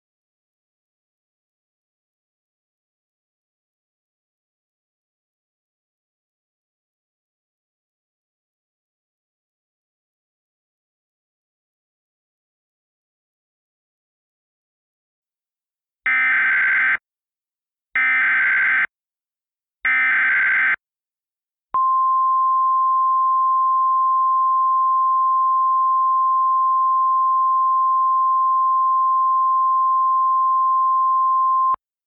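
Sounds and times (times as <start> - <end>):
steady single-pitch alarm tone: 18.0 - 18.9.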